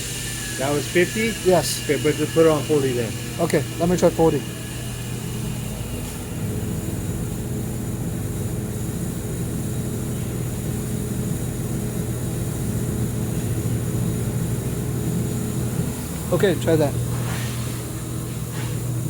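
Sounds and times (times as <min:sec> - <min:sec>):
laser welder humming with hiss: 0:00.0 - 0:19.0.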